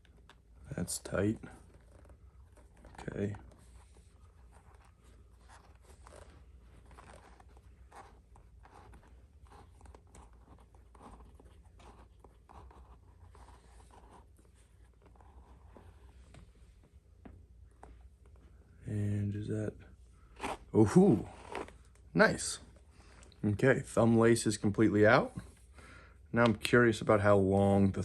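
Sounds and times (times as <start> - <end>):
leather lace rubbing through holes: 1.4 - 16.5, 20.3 - 21.9.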